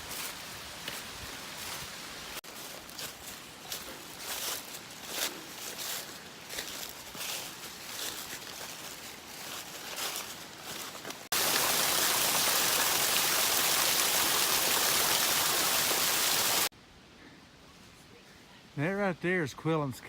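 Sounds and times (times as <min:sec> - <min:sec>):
footsteps through leaf litter: 0:00.0 - 0:12.6
creek water rushing: 0:00.0 - 0:16.7.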